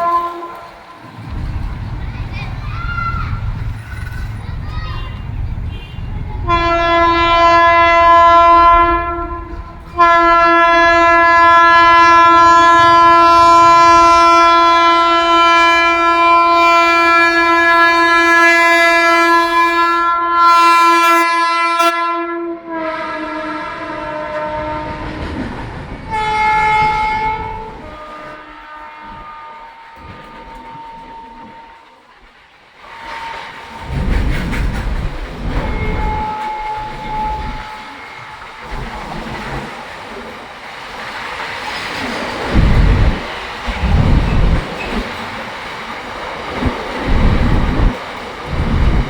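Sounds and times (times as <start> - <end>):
locomotive horn blowing: 0.0 - 1.5, 5.0 - 25.0, 26.1 - 32.0, 32.8 - 33.6, 35.6 - 38.7
low rumble of running train: 0.0 - 49.0.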